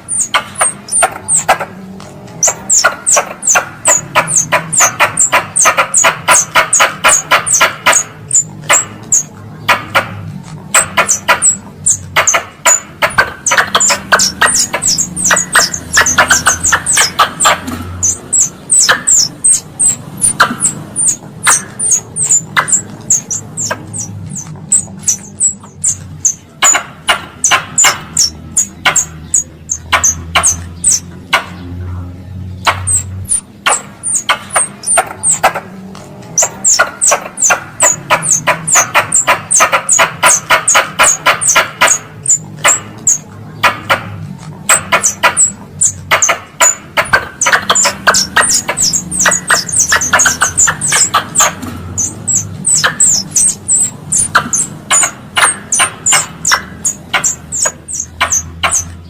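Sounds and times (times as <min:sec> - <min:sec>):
squirrel call chips: 0:00.0 - 0:31.1, 0:32.7 - 0:59.0
rattling squirrel chatter: 0:00.0 - 0:59.0.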